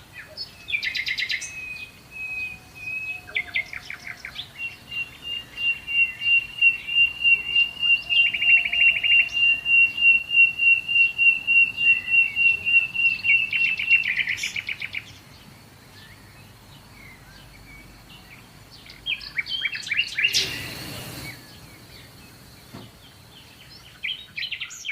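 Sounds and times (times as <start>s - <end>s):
small birds chirping: 0.0s - 24.9s.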